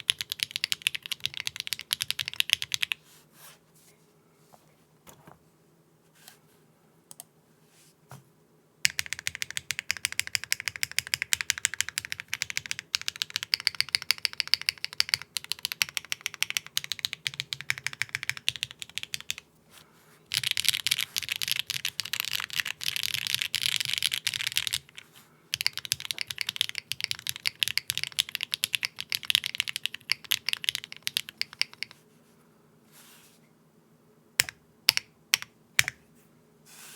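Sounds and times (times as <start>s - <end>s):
mechanical keyboard typing: 0.0s - 3.0s, 8.8s - 19.4s, 20.3s - 32.0s.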